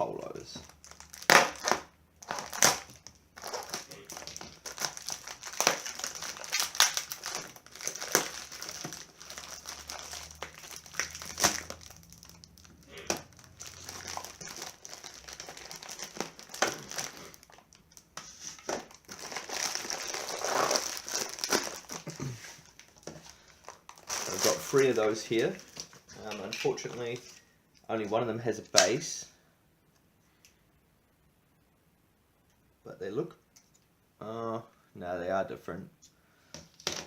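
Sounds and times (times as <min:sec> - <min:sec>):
packaging crinkling: 0:00.6 - 0:27.4.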